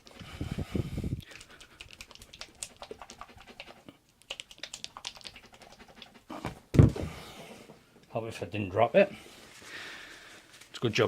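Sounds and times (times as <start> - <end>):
plastic bottle shaken with sloshing: 1.2 - 3.8.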